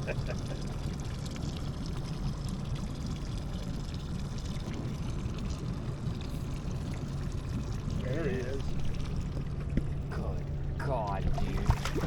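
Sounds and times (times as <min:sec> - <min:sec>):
water lapping against boat hull: 0:03.9 - 0:12.0.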